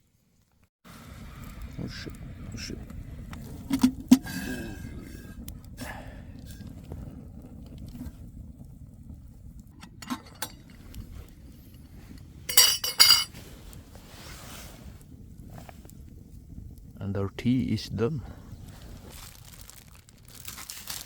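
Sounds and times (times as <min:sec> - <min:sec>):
metal cookware clinking: 0:09.8 - 0:10.8, 0:12.5 - 0:13.3
pot and cup clanking together: 0:09.8 - 0:10.8, 0:12.5 - 0:13.3
metal cookware knocking: 0:12.5 - 0:13.3.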